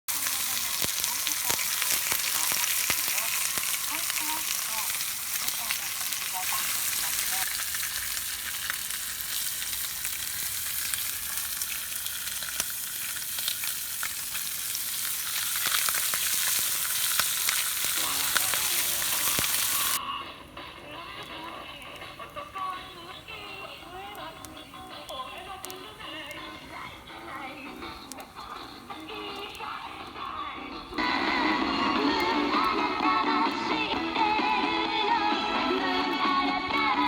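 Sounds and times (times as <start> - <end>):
radio static hiss and crackle: 0.1 - 7.7, 16.8 - 33.7.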